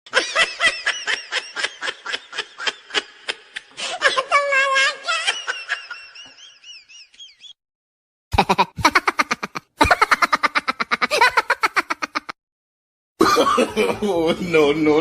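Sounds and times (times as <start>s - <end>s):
staccato cackling laugh effect: 8.3s - 12.4s.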